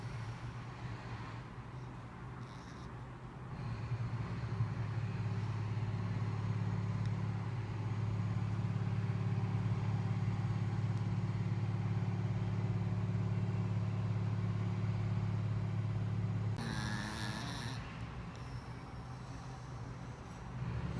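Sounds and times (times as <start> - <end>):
cat snoring: 2.4 - 4.7, 16.6 - 20.5.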